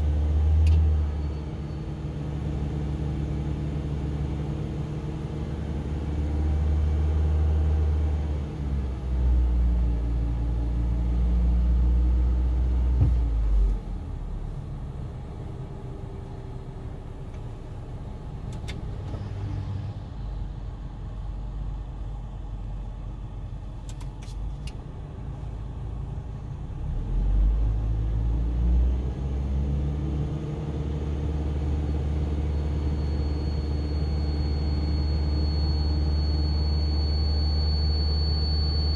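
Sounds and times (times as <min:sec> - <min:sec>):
car air conditioning droning hum: 0:12.5 - 0:19.2, 0:20.5 - 0:26.7.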